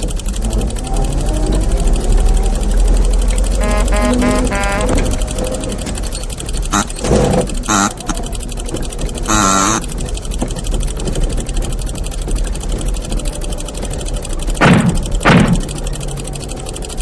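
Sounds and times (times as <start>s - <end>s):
rattly car engine chugging: 0.0s - 17.0s
car horn honk: 3.4s - 8.2s, 9.3s - 9.9s
short pitched squeaks: 3.6s - 9.9s.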